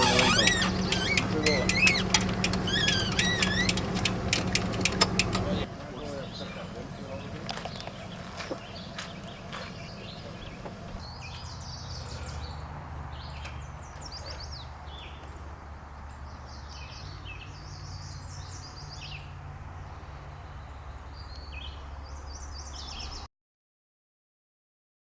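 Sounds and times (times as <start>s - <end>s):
low steady rumble: 0.0s - 13.9s
songbirds singing: 0.0s - 23.3s.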